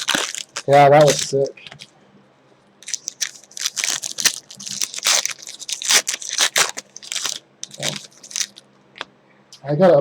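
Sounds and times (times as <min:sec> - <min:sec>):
foil wrappers crinkling and tearing: 0:00.0 - 0:01.9, 0:02.8 - 0:08.6.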